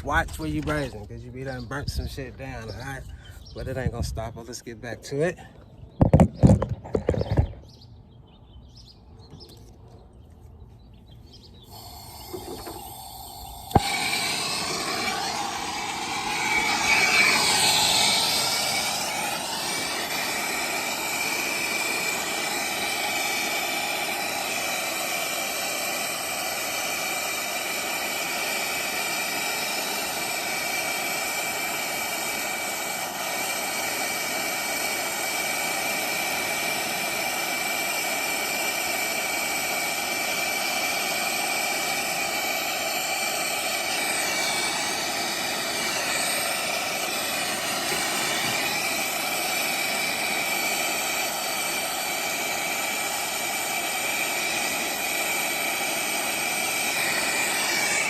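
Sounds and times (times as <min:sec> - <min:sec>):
faint gas hiss: 0:11.6 - 0:58.0
torch flame hissing: 0:11.6 - 0:58.0
torch ignition pop: 0:11.7 - 0:36.2, 0:40.6 - 0:58.0.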